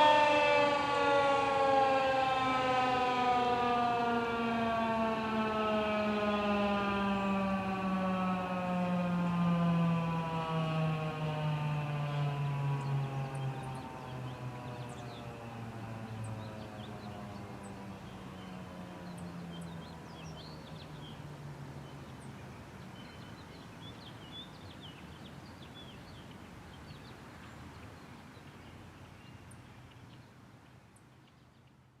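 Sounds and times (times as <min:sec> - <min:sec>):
siren winding down: 0:00.0 - 0:16.6
birds chirping: 0:11.9 - 0:30.3.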